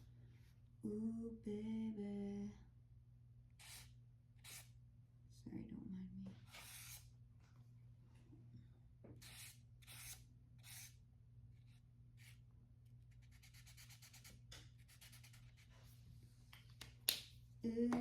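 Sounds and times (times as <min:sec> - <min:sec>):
marker scratching on paper: 0:03.6 - 0:04.7, 0:06.4 - 0:07.0, 0:09.2 - 0:10.9, 0:13.2 - 0:15.7.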